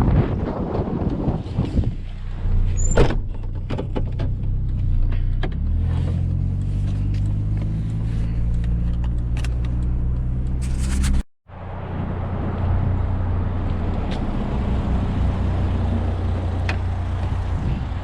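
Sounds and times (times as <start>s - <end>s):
rattles and clicks: 2.8s - 5.7s, 6.6s - 11.2s
pickup engine running: 11.5s - 18.0s.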